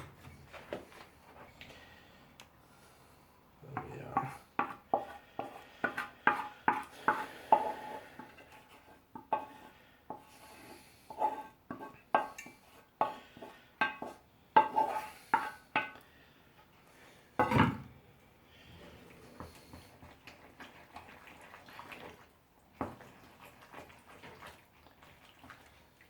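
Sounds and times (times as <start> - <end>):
spoon scraping a saucepan: 4.0 - 16.0.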